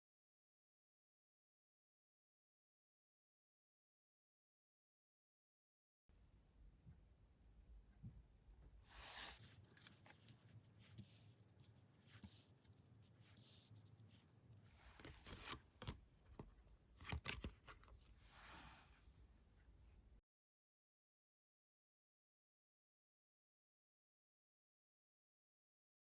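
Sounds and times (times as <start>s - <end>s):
cards sliding swishes: 8.9s - 12.7s, 13.3s - 16.0s, 17.0s - 19.0s.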